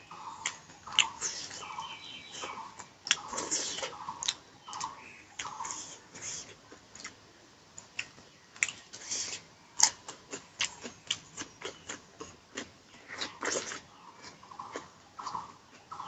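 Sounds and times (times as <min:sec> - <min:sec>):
wet chewing and lip-smacking: 0:00.4 - 0:01.7, 0:02.4 - 0:07.2, 0:07.8 - 0:16.0.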